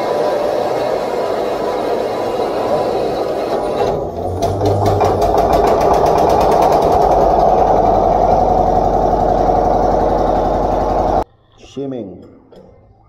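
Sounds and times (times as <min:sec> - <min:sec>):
diesel engine clattering: 0:01.4 - 0:11.2.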